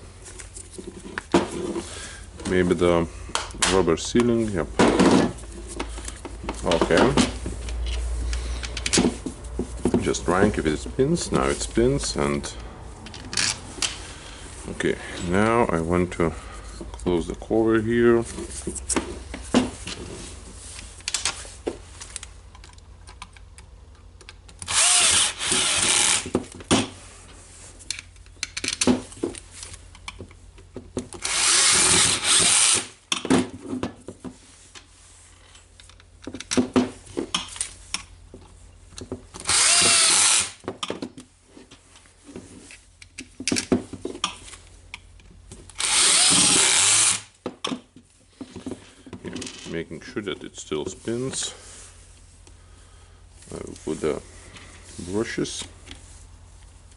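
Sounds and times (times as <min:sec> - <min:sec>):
handling clicks and knocks: 0:03.3 - 0:11.4
power screwdriver running: 0:24.6 - 0:26.3, 0:31.2 - 0:32.9, 0:39.4 - 0:40.6, 0:45.8 - 0:47.3.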